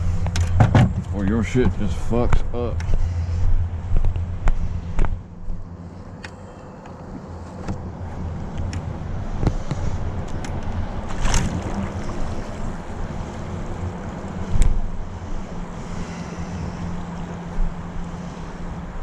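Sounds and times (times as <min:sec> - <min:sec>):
wind: 0:00.0 - 0:19.0
lapping water: 0:11.1 - 0:14.4.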